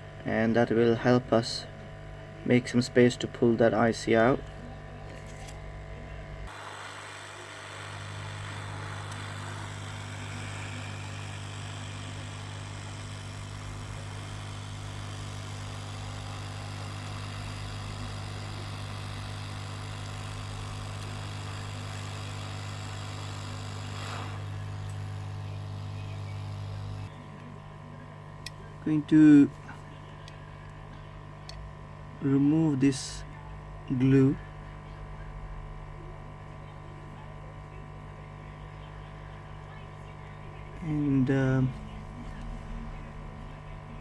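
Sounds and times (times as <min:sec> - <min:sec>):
hot air station blowing: 0:06.5 - 0:27.1
low hum: 0:39.7 - 0:44.0.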